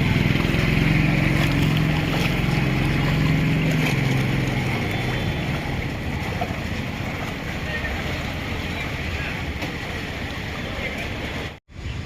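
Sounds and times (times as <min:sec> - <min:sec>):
motor engine running: 0:00.0 - 0:09.1.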